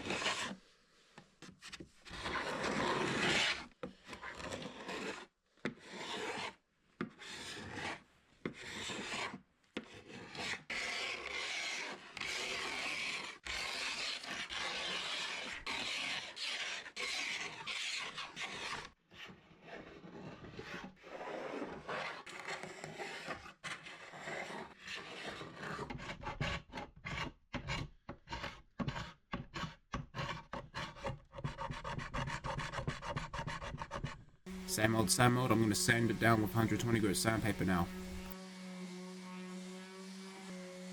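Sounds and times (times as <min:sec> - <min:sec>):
hand tool rasping on wood: 0:00.0 - 0:00.6, 0:02.1 - 0:18.9, 0:19.6 - 0:26.6, 0:27.2 - 0:38.4.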